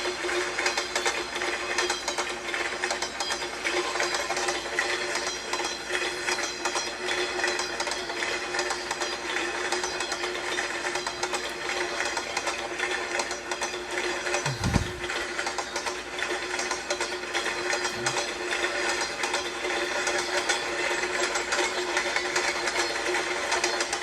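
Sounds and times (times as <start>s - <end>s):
train wheels clickety-clack: 0.0s - 24.0s
steady hum: 14.4s - 15.2s, 17.8s - 18.6s.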